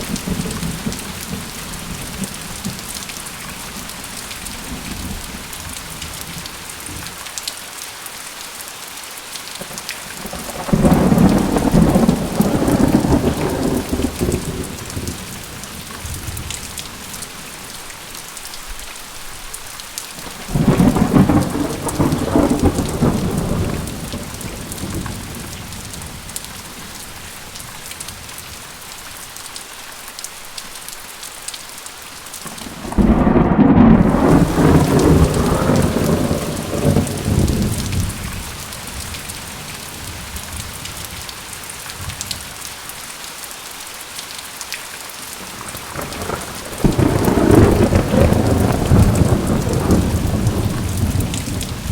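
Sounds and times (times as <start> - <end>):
heavy rain: 0.0 - 51.9
thunder rumbling: 10.2 - 17.4, 20.2 - 26.9, 32.4 - 41.2, 45.4 - 51.9.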